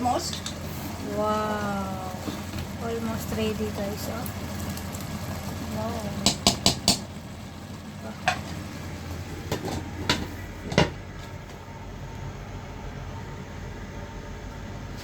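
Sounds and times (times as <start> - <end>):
spoon knocking against pot: 6.2 - 7.1.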